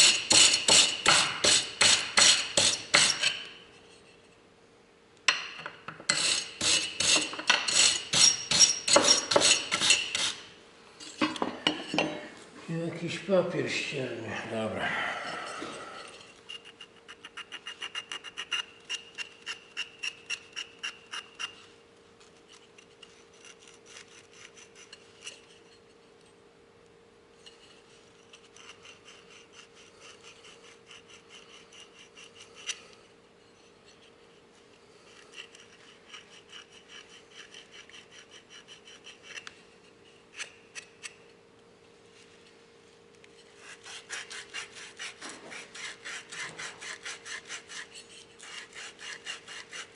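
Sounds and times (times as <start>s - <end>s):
faint steady hum: 0.0s - 49.9s
sandpaper rubbing metal part: 43.6s - 49.9s.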